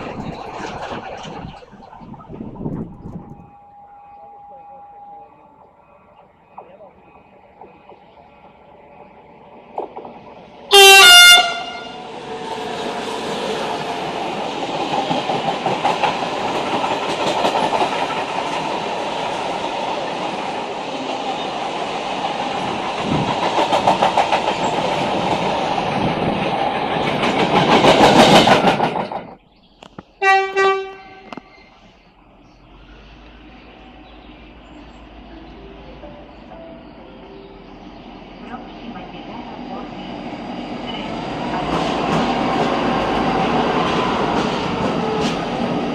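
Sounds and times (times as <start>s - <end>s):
wheels clacking over rail joints: 0.0s - 3.4s, 12.6s - 31.8s, 40.8s - 45.9s
train passing with rumble: 0.0s - 45.9s
train horn blast: 10.7s - 12.2s, 30.2s - 31.5s.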